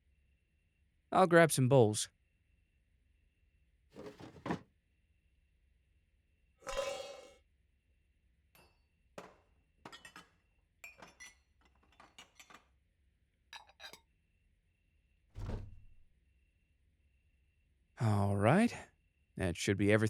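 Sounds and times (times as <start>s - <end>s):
heavy thunk on counter: 4.0s - 4.6s, 15.4s - 16.0s
kitchen things clinking: 4.0s - 4.6s, 9.9s - 12.8s.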